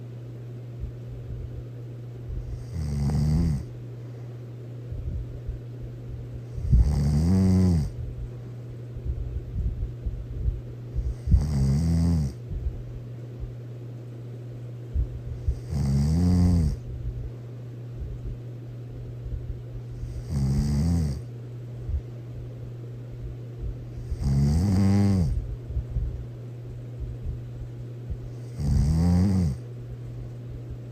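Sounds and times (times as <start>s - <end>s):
steady low hum: 0.0s - 30.9s
person snoring loudly: 2.5s - 3.7s, 6.6s - 8.0s, 11.1s - 12.4s, 15.5s - 16.8s, 20.0s - 21.3s, 24.0s - 25.4s, 28.4s - 29.6s.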